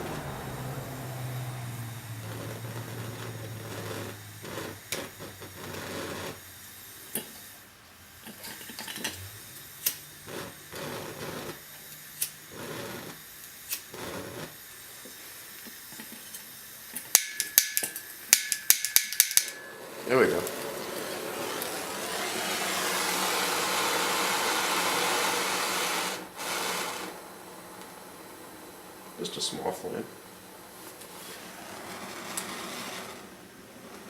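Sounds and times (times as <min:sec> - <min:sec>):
gas torch clicking: 0:08.2 - 0:28.0, 0:31.9 - 0:34.0.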